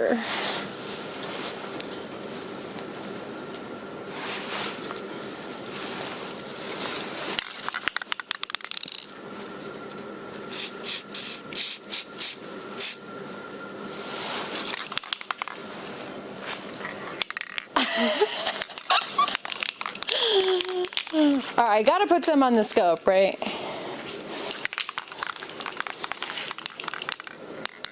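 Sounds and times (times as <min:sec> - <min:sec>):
spray can rattling: 0:10.5 - 0:13.0, 0:24.6 - 0:27.8
spray paint bursts: 0:10.5 - 0:13.0.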